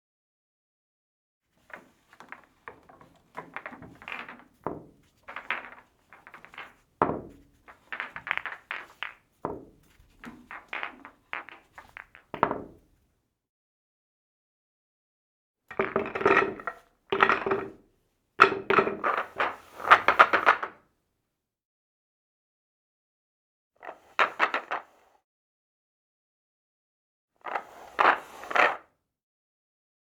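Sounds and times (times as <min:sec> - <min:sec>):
pool balls clacking: 0:15.8 - 0:17.8, 0:18.4 - 0:19.4.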